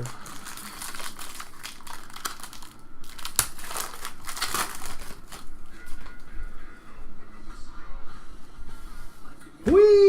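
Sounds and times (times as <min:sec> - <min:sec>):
foil wrapper crinkling and tearing: 0:00.0 - 0:06.2.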